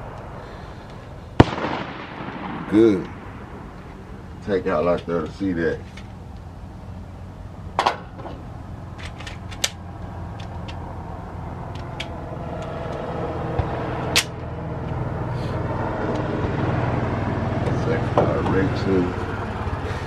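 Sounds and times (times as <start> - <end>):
low engine hum: 0.0 - 20.0
sharp clicks and knocks: 9.0 - 10.9, 11.6 - 15.0.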